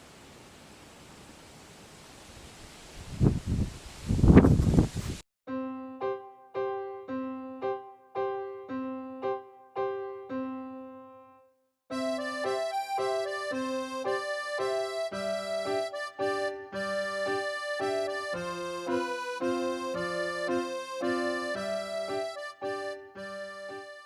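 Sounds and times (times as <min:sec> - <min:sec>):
reedy keyboard tune: 0:05.5 - 0:24.0.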